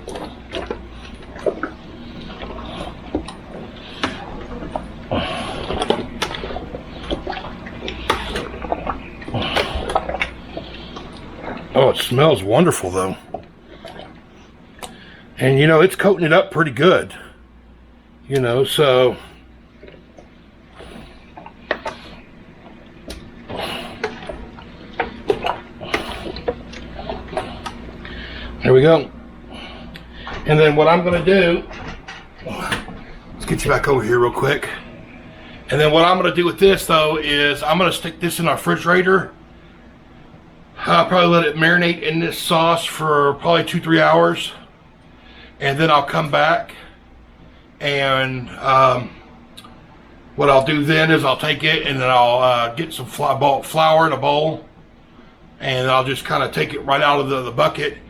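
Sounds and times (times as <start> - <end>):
wet squelching of hand mixing: 0.0 - 41.4.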